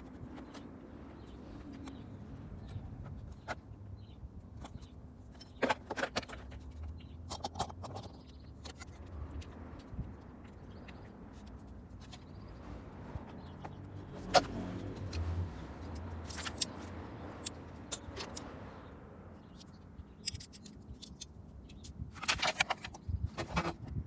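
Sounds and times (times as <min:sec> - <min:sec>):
metal tools clinking and knocking: 0:04.6 - 0:09.0, 0:15.9 - 0:18.6, 0:19.5 - 0:23.7.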